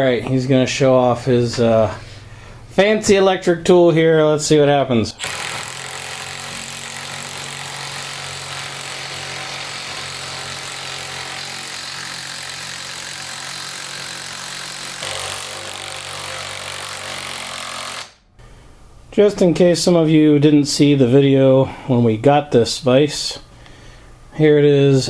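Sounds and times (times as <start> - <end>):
electric power tool running: 5.2 - 18.1.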